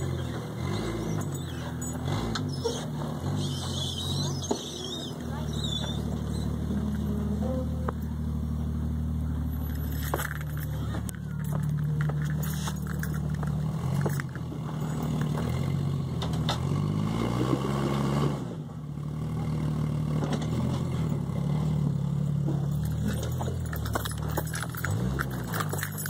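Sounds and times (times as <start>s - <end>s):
engine running at low revs: 5.2s - 26.0s.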